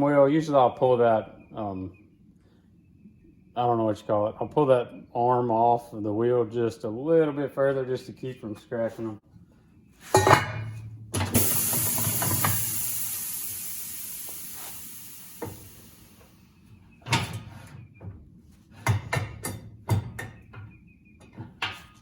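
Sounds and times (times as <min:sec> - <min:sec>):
metal clanks: 0:10.1 - 0:12.8
compressed air hissing: 0:11.3 - 0:16.6.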